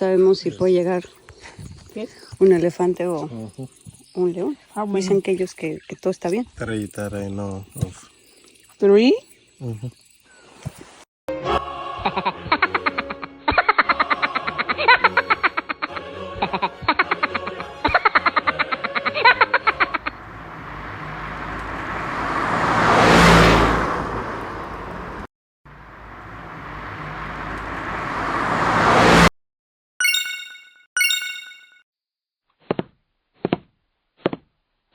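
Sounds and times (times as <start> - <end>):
bright chime dings: 30.0 - 31.8.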